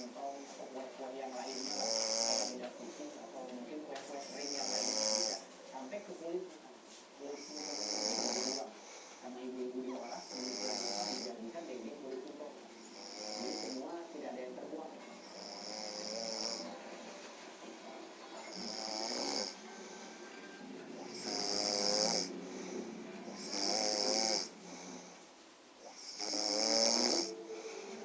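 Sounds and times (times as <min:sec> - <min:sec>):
person snoring: 0:01.4 - 0:02.6, 0:04.2 - 0:05.4, 0:07.4 - 0:08.7, 0:10.2 - 0:11.4, 0:12.8 - 0:13.8, 0:15.2 - 0:16.8, 0:18.4 - 0:20.2, 0:21.0 - 0:25.2, 0:25.8 - 0:28.0.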